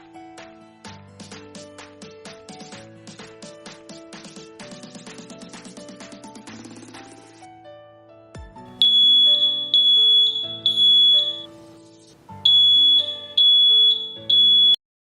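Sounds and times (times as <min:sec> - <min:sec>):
background music: 0:00.0 - 0:14.8
smoke detector beeping: 0:08.8 - 0:11.6, 0:12.4 - 0:14.8.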